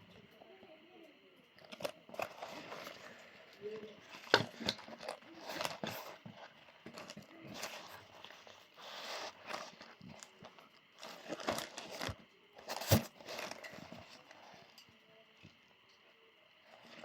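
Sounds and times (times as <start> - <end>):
bag packaging rustling: 1.6 - 14.7.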